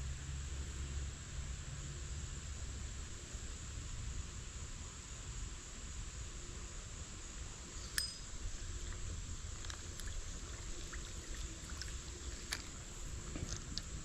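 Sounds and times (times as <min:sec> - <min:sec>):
water trickling over rocks: 0:07.8 - 0:14.0.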